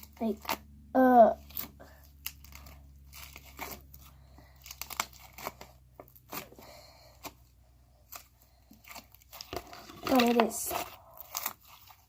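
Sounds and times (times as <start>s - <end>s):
slime clicking and crackling: 1.4s - 7.4s.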